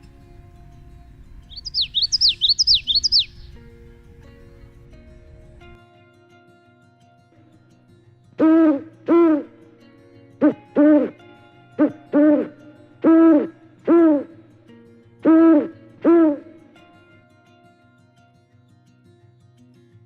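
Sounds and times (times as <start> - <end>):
animal calling: 1.5 - 3.5, 8.4 - 9.6, 10.4 - 11.2, 11.8 - 14.4, 15.2 - 16.7.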